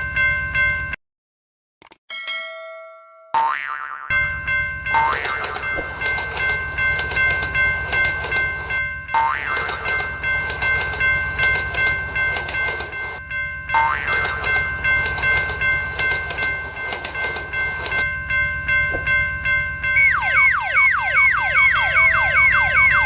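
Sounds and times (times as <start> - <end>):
level crossing bell ringing: 0.0 - 1.0, 2.1 - 3.5, 4.1 - 23.0
passing train rumble and clatter: 4.2 - 20.0.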